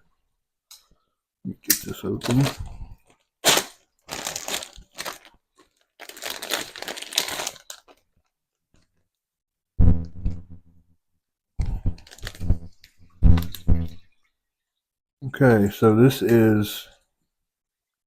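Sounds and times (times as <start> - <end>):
plastic bag crinkling: 2.2 - 8.2, 11.9 - 12.7, 13.4 - 13.7
short low-pitched sounds: 9.8 - 10.8, 11.6 - 14.0.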